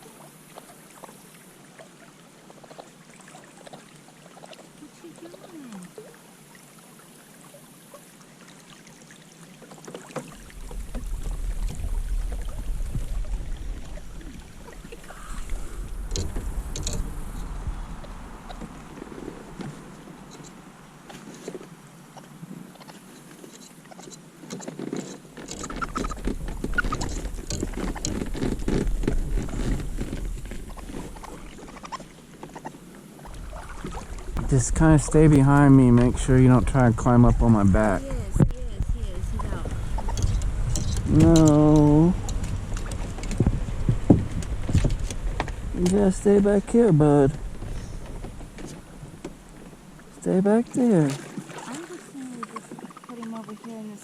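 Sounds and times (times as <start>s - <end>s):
scratching and tapping on kayak: 9.6s - 54.0s
low rumble: 10.4s - 20.3s, 33.3s - 50.0s
knocks against kayak hull: 41.1s - 45.6s.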